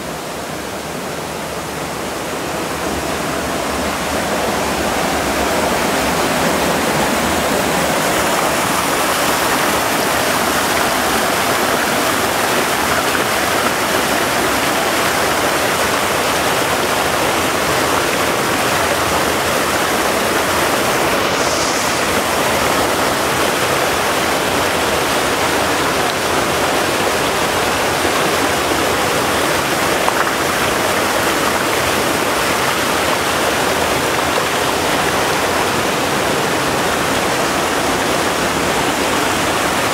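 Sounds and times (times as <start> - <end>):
rushing splashing water: 0.0 - 39.9.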